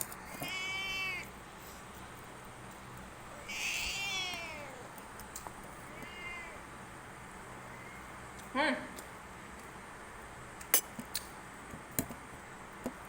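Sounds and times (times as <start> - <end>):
cat meowing: 0.4 - 1.3, 3.3 - 4.9, 5.9 - 6.7.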